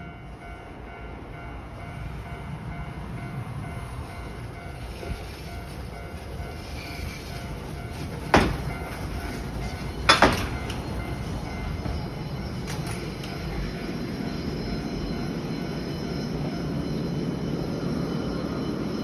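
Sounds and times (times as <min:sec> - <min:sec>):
cable car rumble: 0:00.0 - 0:19.0
wheels clunking over rail joint: 0:06.8 - 0:14.0.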